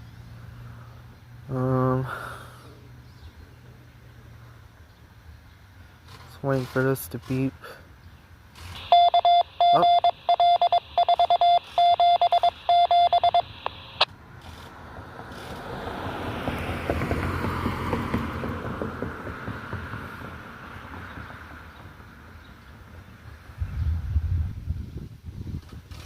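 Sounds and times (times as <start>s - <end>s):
radio beeping tones: 8.8s - 14.1s
radio squelch click: 8.8s - 14.1s
vehicle passing: 14.1s - 24.1s.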